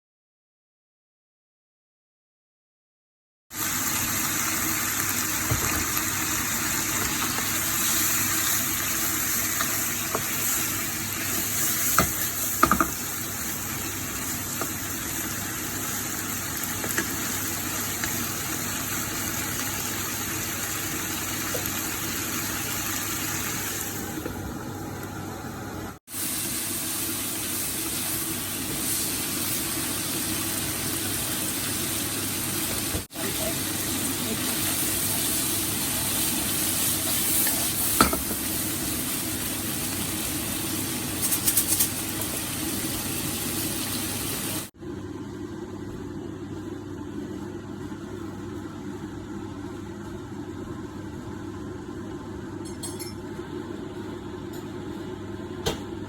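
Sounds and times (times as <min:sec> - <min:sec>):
food sizzling in a hot pan: 0:03.5 - 0:24.1, 0:26.1 - 0:44.8.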